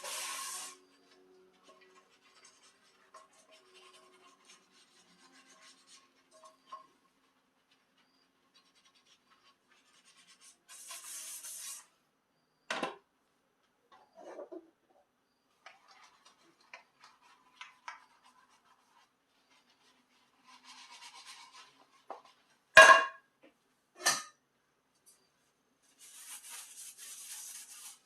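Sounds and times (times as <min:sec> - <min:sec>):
running water hiss: 0:00.0 - 0:01.1
dishes scrubbed by hand: 0:00.0 - 0:11.9, 0:15.6 - 0:22.8, 0:25.9 - 0:28.0.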